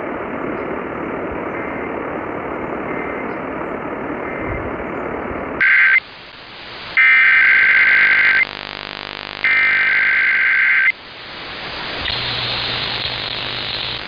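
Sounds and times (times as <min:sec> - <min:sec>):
steady hiss with low hum: 0:00.0 - 0:14.0
two-tone digital alert screech: 0:05.6 - 0:06.0.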